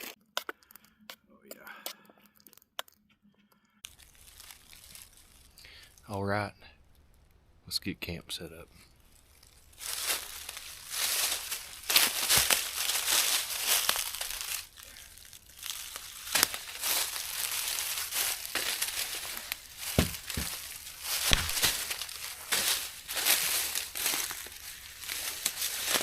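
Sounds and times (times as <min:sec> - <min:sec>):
crinkling and rustling of gear: 0:00.0 - 0:07.4, 0:08.7 - 0:26.0
dull knocks: 0:19.9 - 0:20.6.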